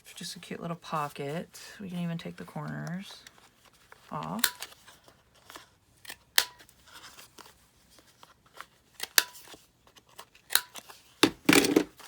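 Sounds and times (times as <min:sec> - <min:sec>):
paper rustling: 0:06.6 - 0:12.0.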